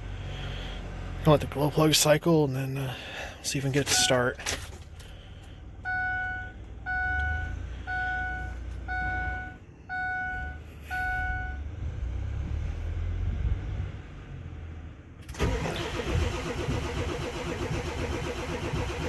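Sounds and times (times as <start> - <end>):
dashboard warning chime: 3.5 - 4.7, 5.8 - 11.7
low rumble: 10.3 - 14.2.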